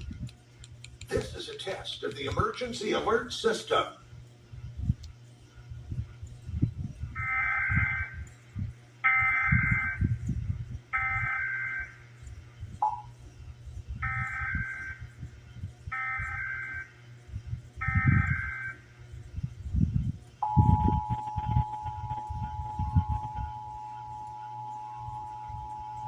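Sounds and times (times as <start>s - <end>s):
low hum: 0.0s - 26.0s
buzzy digital data bursts: 20.4s - 26.0s.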